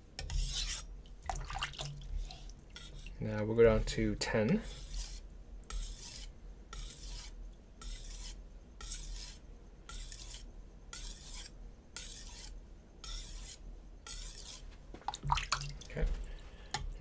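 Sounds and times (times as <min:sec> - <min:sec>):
knife rasping on whetstone: 0:00.2 - 0:00.9, 0:02.2 - 0:03.2, 0:04.5 - 0:14.7.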